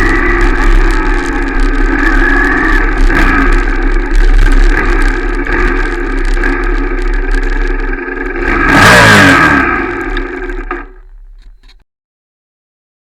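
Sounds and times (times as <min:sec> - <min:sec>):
motorcycle engine running and revving: 0:00.0 - 0:11.8.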